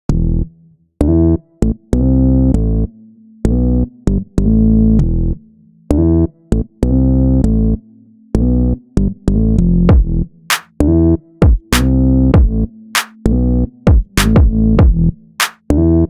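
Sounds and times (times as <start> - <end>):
synthesizer chords electronic music: 1.0 - 2.9, 9.4 - 16.0.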